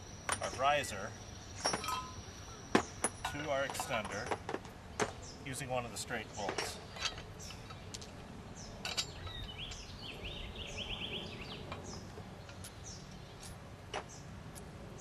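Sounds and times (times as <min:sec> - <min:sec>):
bird trill: 0:00.0 - 0:04.0, 0:08.6 - 0:14.3
birds chirping: 0:00.0 - 0:15.0
low steady background noise: 0:00.0 - 0:15.0.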